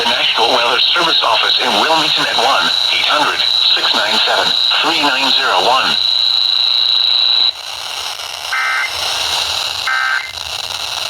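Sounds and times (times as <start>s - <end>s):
thin high steady tone: 0.0s - 7.5s
two-tone data bursts: 0.0s - 7.6s, 8.5s - 9.0s, 9.8s - 10.4s
radio hiss: 0.0s - 10.5s.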